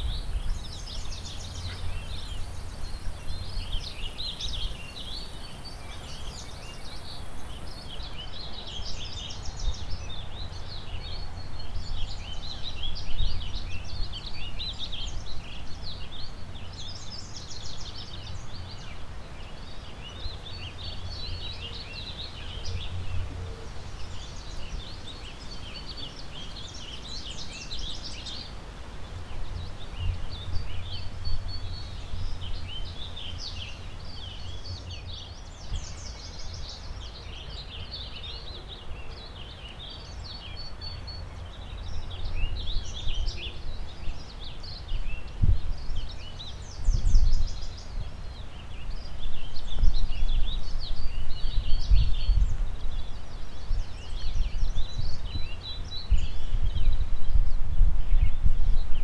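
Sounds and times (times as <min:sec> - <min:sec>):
low wind rumble: 0:00.0 - 0:07.9, 0:41.9 - 0:59.0
songbirds singing: 0:00.0 - 0:59.0.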